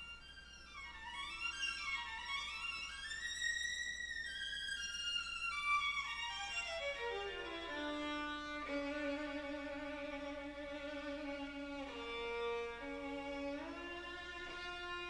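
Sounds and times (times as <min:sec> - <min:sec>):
violin melody over loudspeakers: 0:05.1 - 0:15.0.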